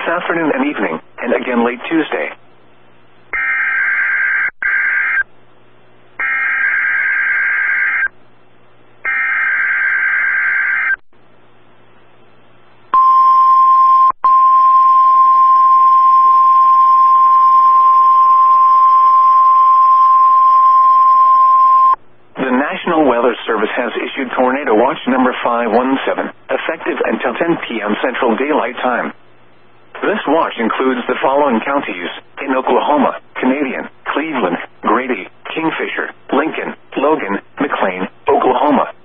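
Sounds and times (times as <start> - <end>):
steady warning alarm tone: 3.4 - 5.2, 6.2 - 8.1, 9.1 - 11.0, 13.0 - 22.0.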